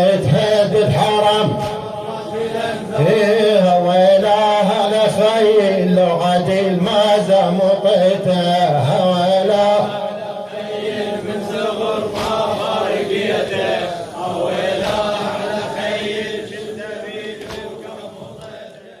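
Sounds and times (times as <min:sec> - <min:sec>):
group chanting in chorus: 0:00.0 - 0:05.8, 0:06.4 - 0:19.0.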